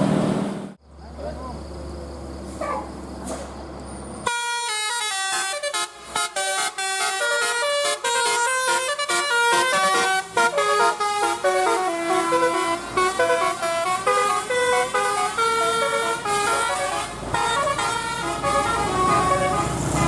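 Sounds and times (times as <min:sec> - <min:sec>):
bus air horn playing a tune: 0:04.3 - 0:20.0.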